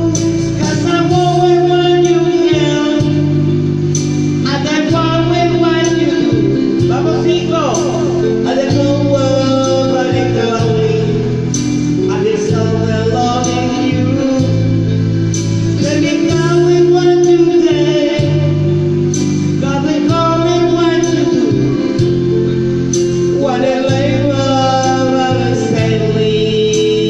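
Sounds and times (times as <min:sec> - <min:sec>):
bass: 0:00.0 - 0:27.0
guitar: 0:00.0 - 0:27.0
man singing: 0:00.0 - 0:27.0.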